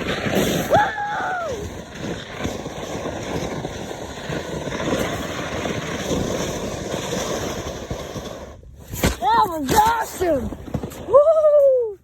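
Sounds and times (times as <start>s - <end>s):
board scraping on snow: 0.0s - 11.7s.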